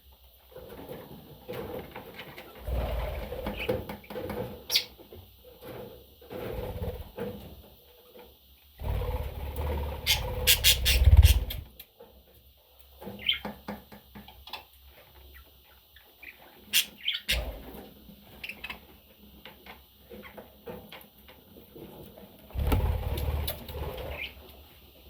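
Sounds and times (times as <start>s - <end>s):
budgerigar chirping: 10.1s - 11.6s, 16.8s - 17.4s.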